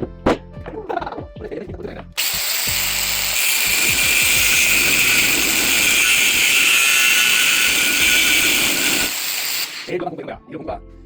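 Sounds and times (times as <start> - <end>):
grinder whining on metal: 2.2 - 9.9.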